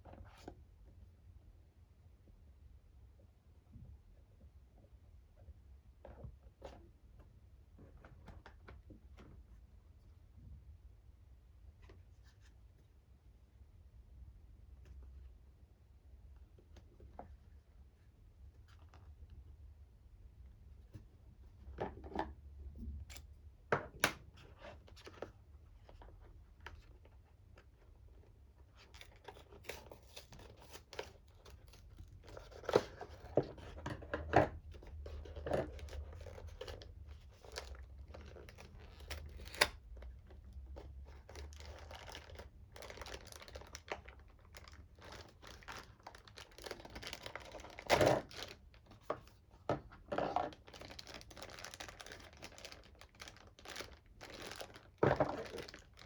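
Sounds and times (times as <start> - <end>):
wrapping crinkling and tearing: 34.8 - 39.8, 40.7 - 48.9, 50.4 - 56.0.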